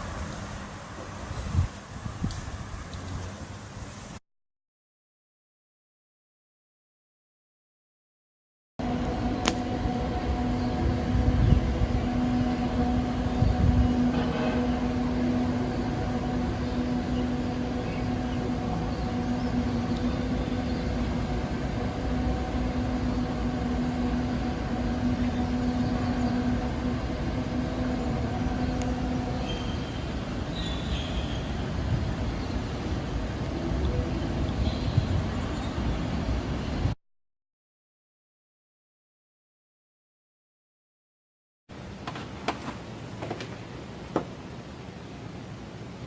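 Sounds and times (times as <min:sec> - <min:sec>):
low rumble: 0:08.8 - 0:37.0
steady droning hum: 0:08.8 - 0:37.0.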